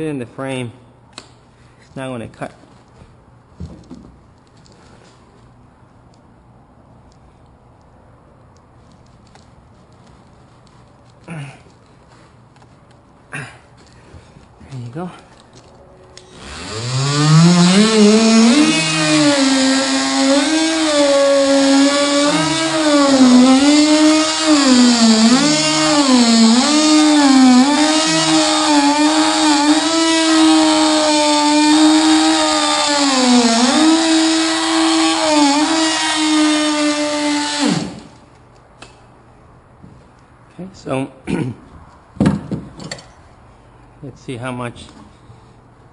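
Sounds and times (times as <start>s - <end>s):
power cutting tool motor: 16.2s - 38.2s.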